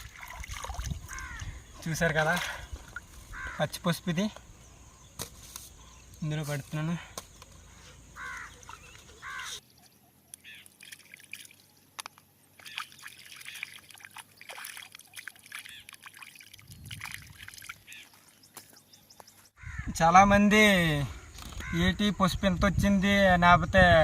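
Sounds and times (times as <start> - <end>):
water sloshing and splashing: 0.0 - 3.4, 8.4 - 9.6, 10.6 - 18.8
bird calls: 1.0 - 16.2, 17.6 - 20.0.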